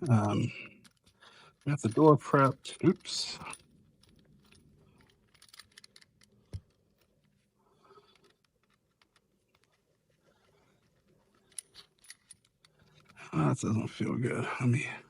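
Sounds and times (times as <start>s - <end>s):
clicks of metal lock hardware: 0.0s - 7.3s, 10.8s - 13.2s.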